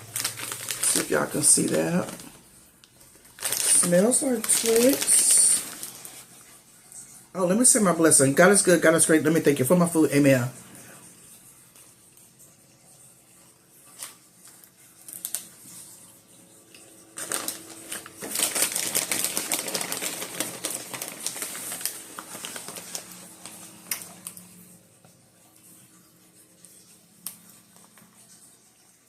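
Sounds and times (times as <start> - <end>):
candy popcorn crunching: 0.0 - 6.5, 13.9 - 15.9, 16.7 - 24.7.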